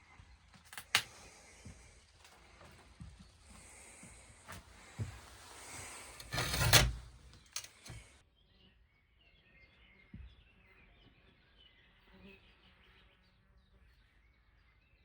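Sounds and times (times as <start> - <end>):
sharp clicks: 0.6 - 1.3
faint bird chirps: 8.3 - 15.0.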